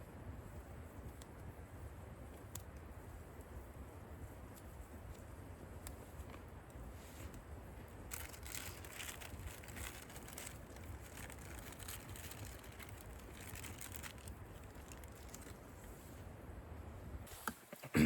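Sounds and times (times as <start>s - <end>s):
low steady rumble: 0.0s - 17.3s
faint crinkling and rustling: 2.2s - 16.4s.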